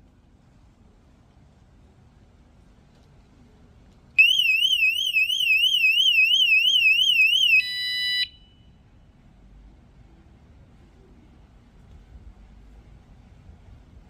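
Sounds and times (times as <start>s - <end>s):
motorcycle alarm siren warbling: 4.2s - 8.5s
alarm beep: 4.2s - 8.6s.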